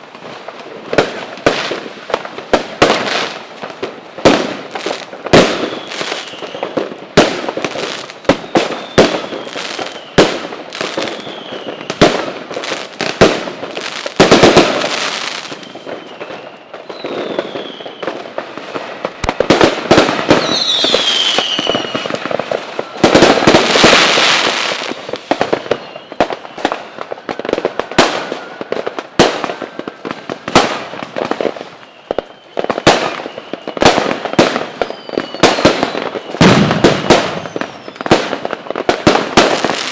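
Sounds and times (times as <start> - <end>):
fireworks bangs: 0.0 - 39.9
fireworks crackling: 0.0 - 39.9
falling whistles: 5.6 - 6.8, 8.1 - 10.2, 11.0 - 12.0, 15.2 - 18.2, 20.2 - 27.5, 31.6 - 38.2.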